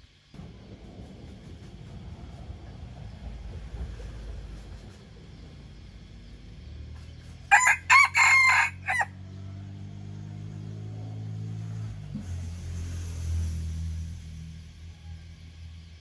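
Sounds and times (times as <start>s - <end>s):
young cockerel crowing: 7.5s - 9.2s.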